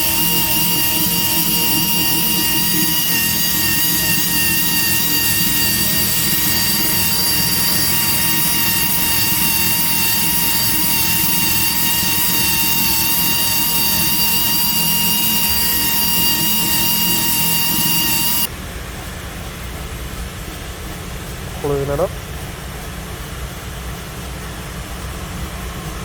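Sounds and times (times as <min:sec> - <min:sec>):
tire buffer whining: 0:00.0 - 0:18.5.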